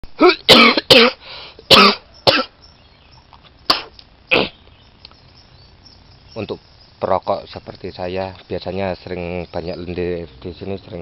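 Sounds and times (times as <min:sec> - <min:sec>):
man coughing phlegmy: 0:00.2 - 0:02.6, 0:03.7 - 0:04.6.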